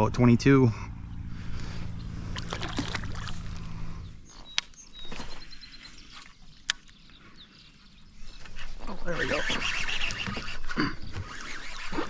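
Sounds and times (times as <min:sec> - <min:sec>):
steady low hum: 0:00.0 - 0:08.5
water splashing and sloshing: 0:02.2 - 0:03.9.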